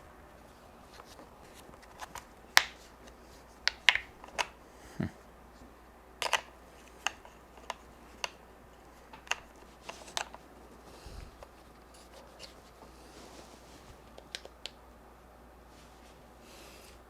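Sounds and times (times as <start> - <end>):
camera parts clicking: 6.2 - 8.4
light rubbing and rustling: 8.8 - 14.2.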